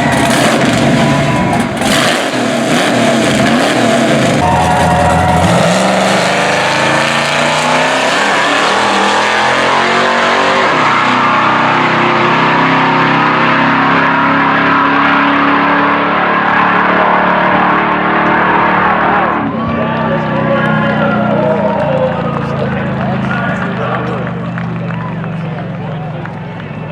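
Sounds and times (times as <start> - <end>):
drag racing car engine at high revs: 0.0 - 26.9.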